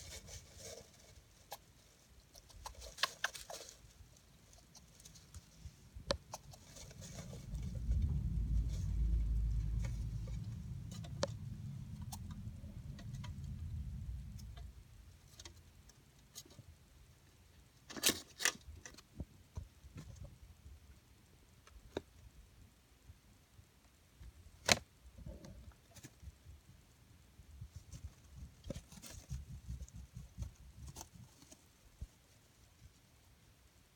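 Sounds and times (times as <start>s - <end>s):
hamster pattering and scratching: 0.0s - 16.8s, 17.8s - 20.4s, 24.6s - 33.9s
low rumble: 6.6s - 15.1s.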